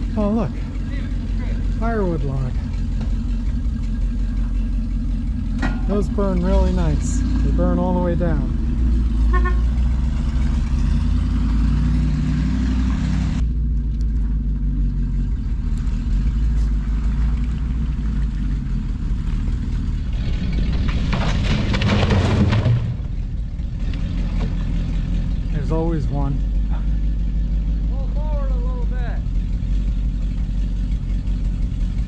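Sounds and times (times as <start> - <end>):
machine engine humming: 0.0 - 32.0
rushing crackling noise: 19.4 - 24.8.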